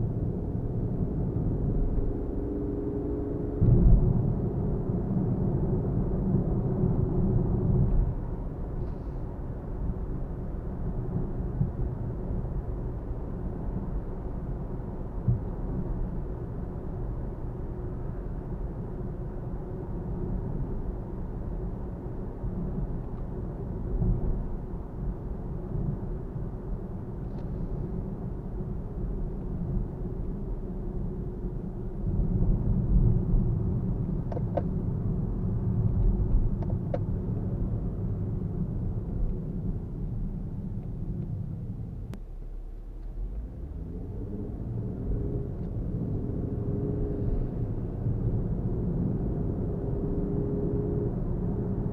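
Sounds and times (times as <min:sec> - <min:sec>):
car engine and road noise: 0:00.0 - 0:51.9.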